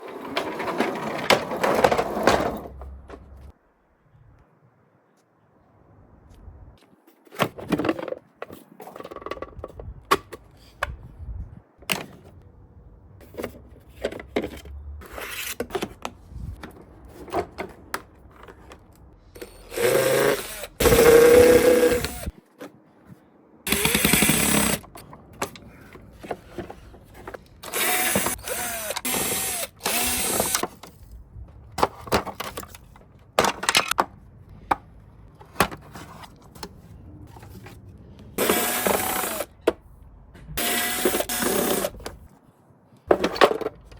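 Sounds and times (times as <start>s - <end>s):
power drill whirring: 19.4s - 22.3s, 23.7s - 24.9s, 27.6s - 30.6s, 38.4s - 39.5s, 40.6s - 42.0s
parts clicking and knocking: 23.7s - 37.8s.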